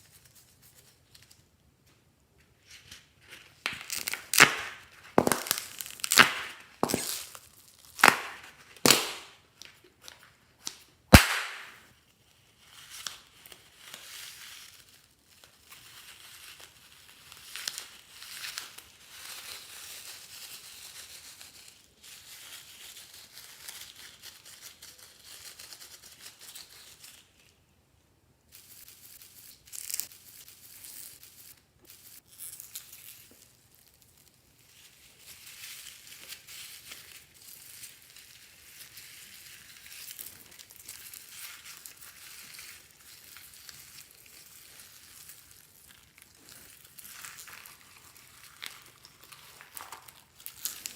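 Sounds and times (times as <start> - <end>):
slime air pockets popping: 8.0 - 9.3, 11.1 - 11.8.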